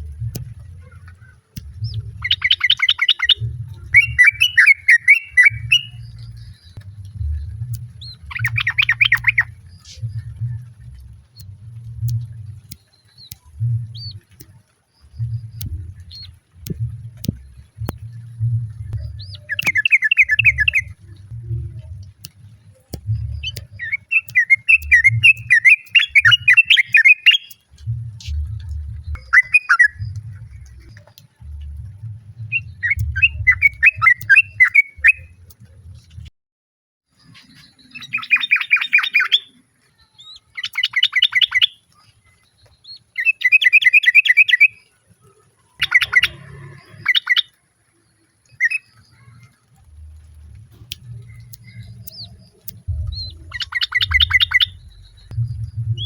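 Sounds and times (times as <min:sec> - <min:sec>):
low muffled pulsing: 0:00.0 - 0:26.6, 0:27.6 - 0:36.3, 0:49.1 - 0:56.0
bulbul chattering calls: 0:04.0 - 0:06.0.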